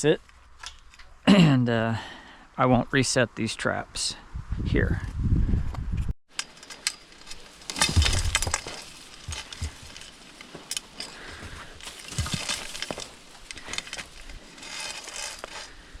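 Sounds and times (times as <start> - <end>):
wire trap clinking and rattling: 6.3 - 15.7.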